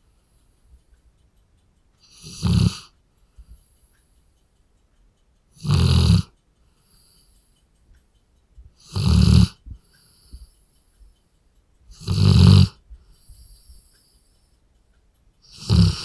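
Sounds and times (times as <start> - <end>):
faint dog breathing: 0.0 - 1.2, 2.0 - 4.4, 5.5 - 7.8, 8.7 - 14.7, 15.4 - 16.0
dog snoring: 2.0 - 3.0, 5.6 - 6.4, 8.8 - 9.6, 11.9 - 12.8, 15.4 - 16.0.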